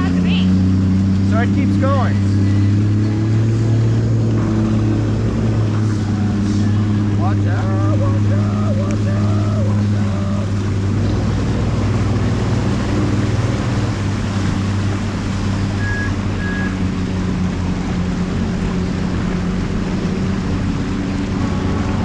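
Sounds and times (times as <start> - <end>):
jet ski engine running: 0.0 - 22.0
water rushing beneath hull: 0.0 - 22.0
short high beeps: 15.7 - 16.8.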